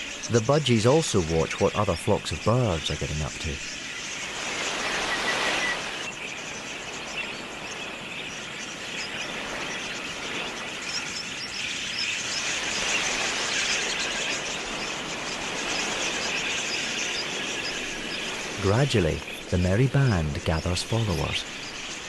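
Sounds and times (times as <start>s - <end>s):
steady hiss: 0.0s - 22.0s
budgerigars chattering: 14.0s - 22.0s.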